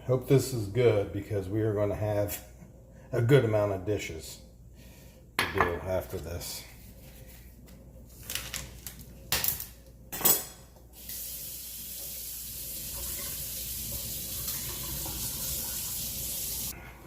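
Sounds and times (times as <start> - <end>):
water running into sink: 11.0 - 16.7.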